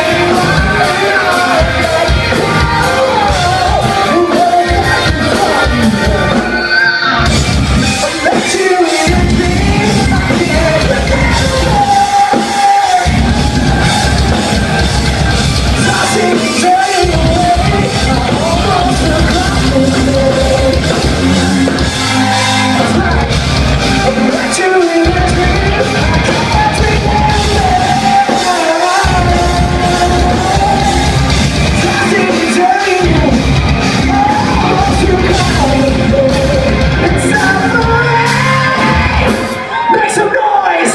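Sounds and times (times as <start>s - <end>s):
live rock band playing: 0.0s - 40.9s.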